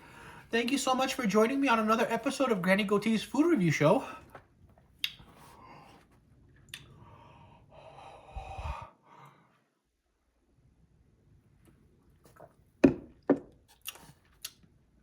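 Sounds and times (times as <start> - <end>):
woman breathing heavily: 6.9 - 9.7.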